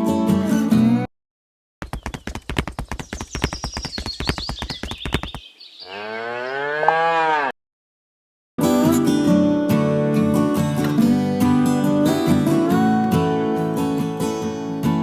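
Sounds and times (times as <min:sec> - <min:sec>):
cow mooing: 0:05.8 - 0:07.6.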